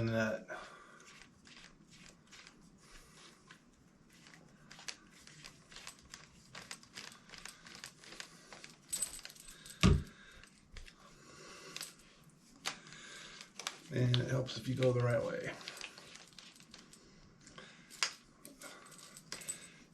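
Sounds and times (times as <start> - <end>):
metal parts clicking and rattling: 4.2 - 10.6, 14.7 - 19.9.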